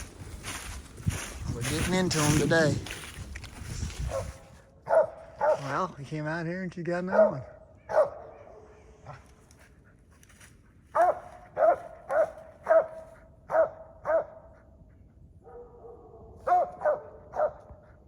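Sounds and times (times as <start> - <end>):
dog barking: 4.1 - 5.8, 7.1 - 9.3, 10.9 - 14.7, 15.4 - 18.0.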